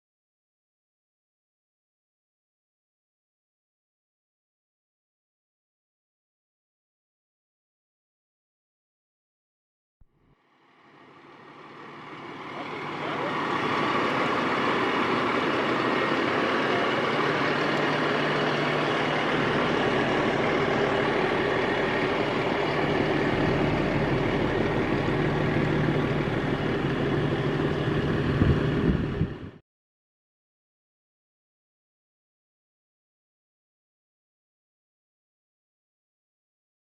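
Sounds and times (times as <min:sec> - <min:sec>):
diesel engine running: 0:10.8 - 0:29.6.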